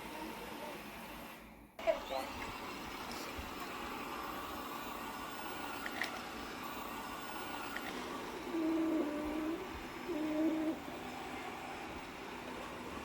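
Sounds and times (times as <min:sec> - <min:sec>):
robot vacuum whirring: 0:02.3 - 0:13.0
small clicks: 0:05.8 - 0:06.3.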